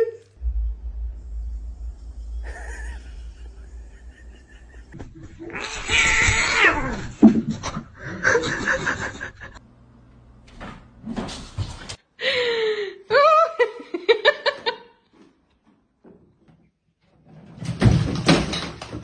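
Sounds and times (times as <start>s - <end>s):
cat meowing: 5.4s - 7.2s.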